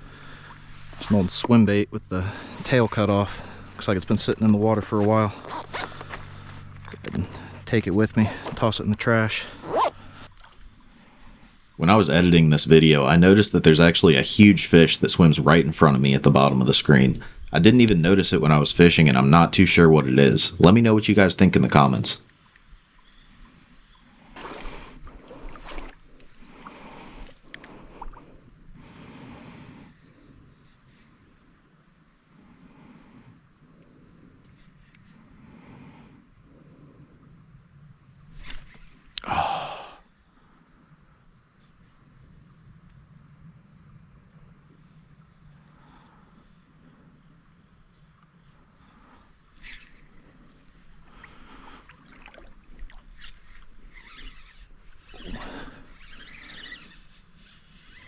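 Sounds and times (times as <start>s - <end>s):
crickets chirring: 0.0s - 58.0s
water sloshing: 9.5s - 11.8s, 19.5s - 28.4s, 49.6s - 58.0s
water swish: 22.4s - 28.4s, 49.6s - 58.0s.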